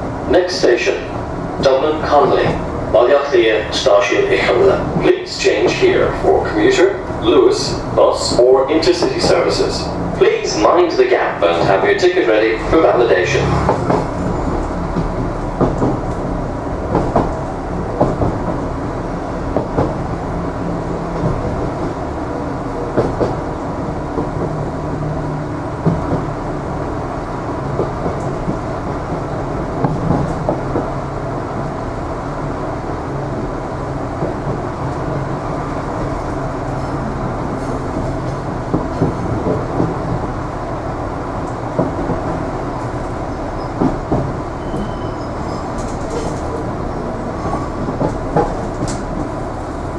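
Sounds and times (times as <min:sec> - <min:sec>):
train rumbling: 0:00.0 - 0:49.9
wheels clicking over rail joints: 0:41.1 - 0:49.8.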